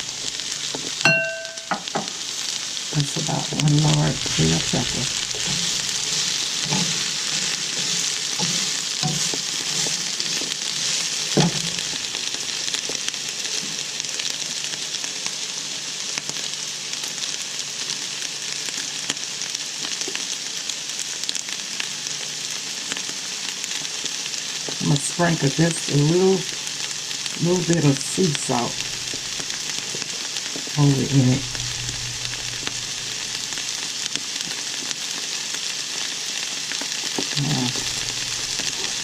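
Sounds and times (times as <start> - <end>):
vegetables sizzling in frying pan: 0.0 - 39.0
stirring knocks against pan: 8.4 - 9.9, 11.4 - 11.8.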